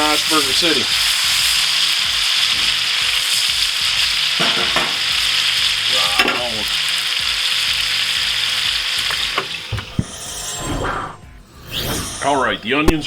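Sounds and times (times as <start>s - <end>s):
onions sizzling in a pan: 0.0s - 9.8s.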